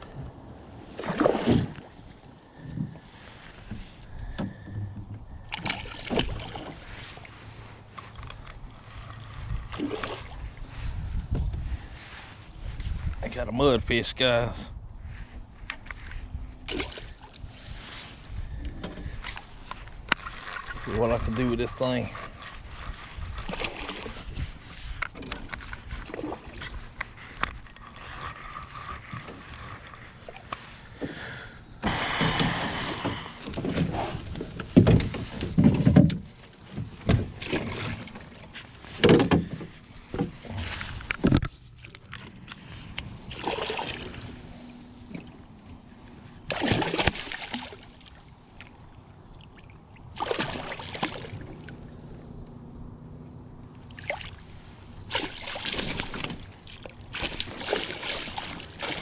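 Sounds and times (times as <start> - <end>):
water splashing and sloshing: 0.0 - 13.4, 15.0 - 59.0
knocks in a boat: 3.7 - 6.6, 31.8 - 41.5.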